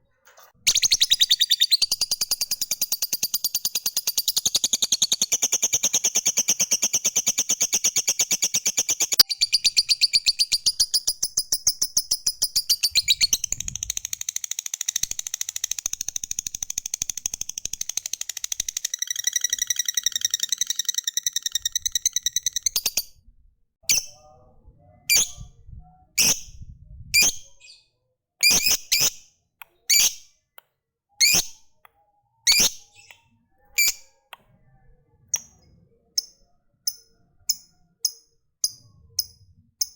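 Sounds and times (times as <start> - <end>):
bird high-pitched rattling trill: 0.7 - 23.1, 35.4 - 39.9.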